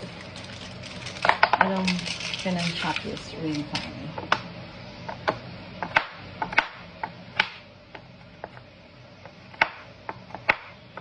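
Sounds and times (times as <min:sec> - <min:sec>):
knife chopping chocolate: 0:05.1 - 0:08.6, 0:09.2 - 0:11.0.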